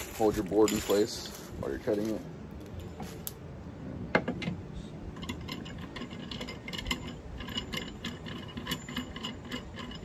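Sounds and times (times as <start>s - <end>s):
clamp and fittings clicking and rattling: 5.1s - 10.0s.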